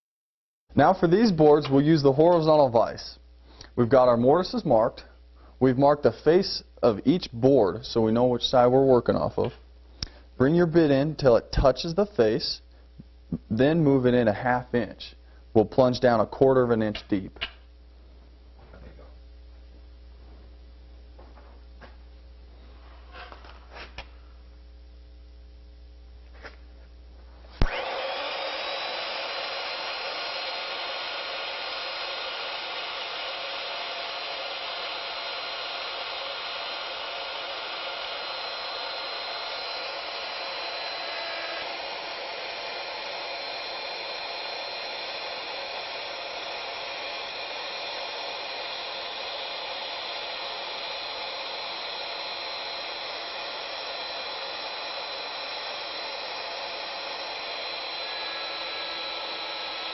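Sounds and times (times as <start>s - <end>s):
wood router whining: 27.6s - 59.9s.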